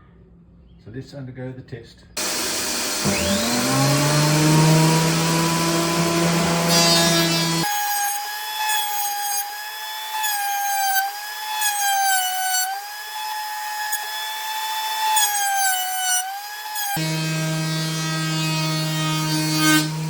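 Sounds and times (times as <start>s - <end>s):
electric motor whining: 2.2s - 7.7s.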